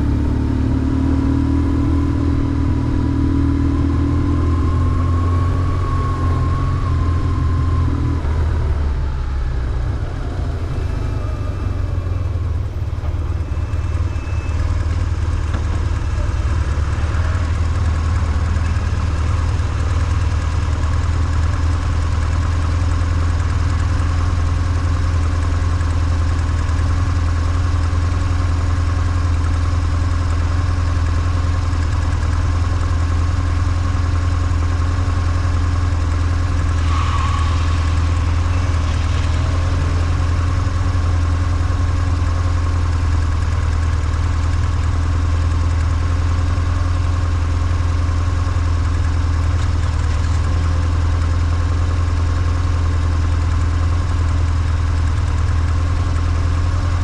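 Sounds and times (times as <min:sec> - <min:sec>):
motorcycle engine running: 0:00.0 - 0:57.0.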